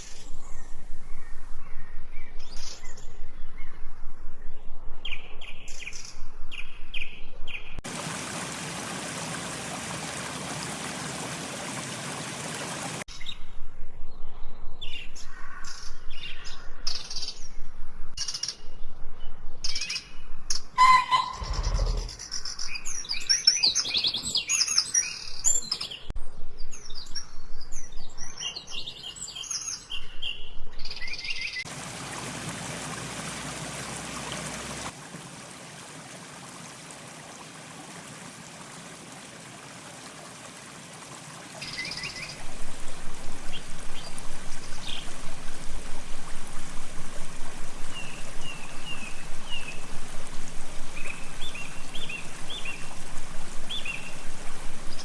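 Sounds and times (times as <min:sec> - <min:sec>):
rushing water: 0:07.8 - 0:13.1, 0:31.7 - 0:55.0
songbirds chirping: 0:40.6 - 0:55.0.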